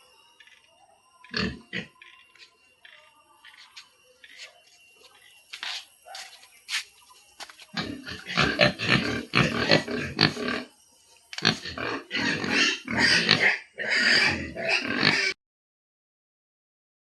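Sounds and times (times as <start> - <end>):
pigs calling: 0.0 - 2.4, 7.7 - 10.7, 11.4 - 15.4.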